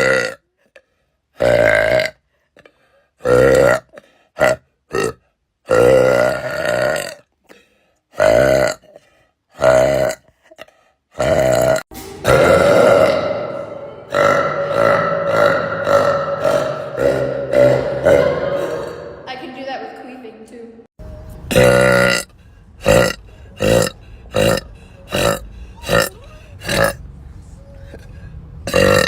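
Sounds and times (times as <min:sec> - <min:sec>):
woman belching: 0:00.0 - 0:00.4, 0:04.4 - 0:07.2, 0:11.2 - 0:19.3, 0:21.5 - 0:22.2, 0:22.8 - 0:27.0, 0:28.7 - 0:29.0.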